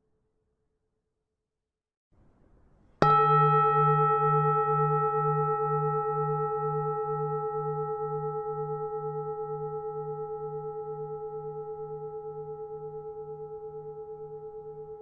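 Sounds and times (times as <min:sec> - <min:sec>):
temple bell ringing: 0:03.0 - 0:14.3.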